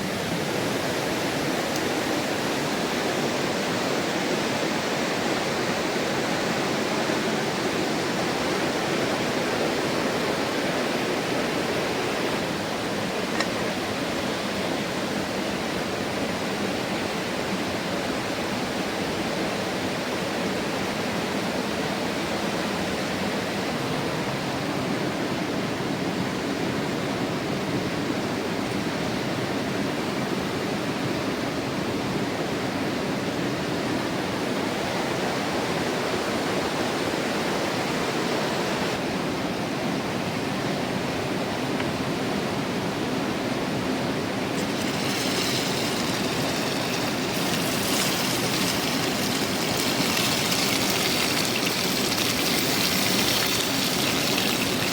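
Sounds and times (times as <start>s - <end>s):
river water rushing: 33.3s - 54.9s.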